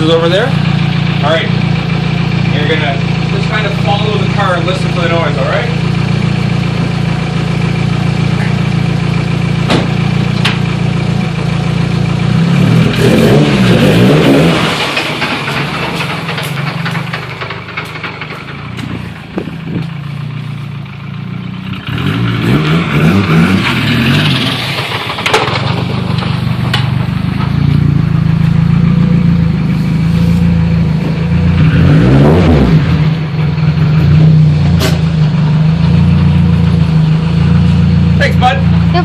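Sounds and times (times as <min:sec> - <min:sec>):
car engine rising and falling: 0:00.0 - 0:39.0
sharp clanks: 0:12.9 - 0:20.4, 0:23.5 - 0:28.8, 0:34.7 - 0:36.0.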